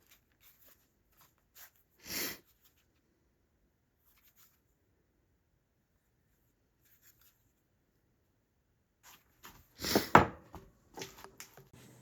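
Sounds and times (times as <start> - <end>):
handling knocks and rustles: 9.4 - 12.0.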